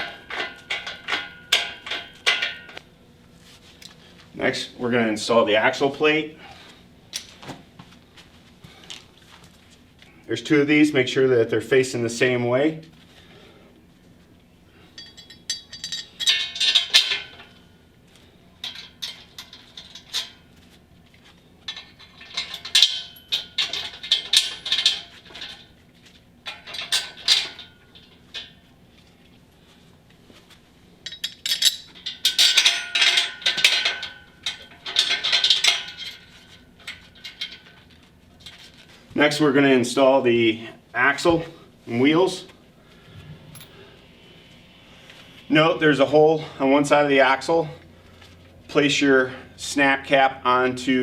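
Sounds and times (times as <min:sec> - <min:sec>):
metal parts clinking and rattling: 0:00.0 - 0:02.8, 0:14.9 - 0:17.6, 0:18.6 - 0:20.6, 0:21.6 - 0:28.6, 0:31.0 - 0:38.9, 0:43.4 - 0:43.8.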